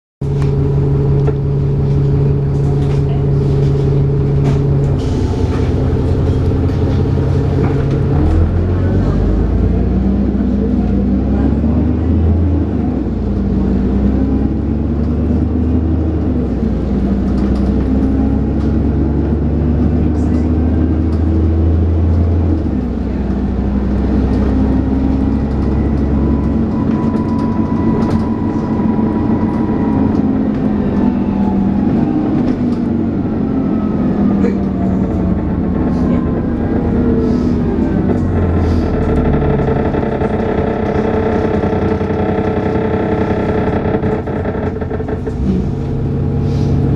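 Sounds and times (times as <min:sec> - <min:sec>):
bus engine pulling hard: 0:00.2 - 0:46.9.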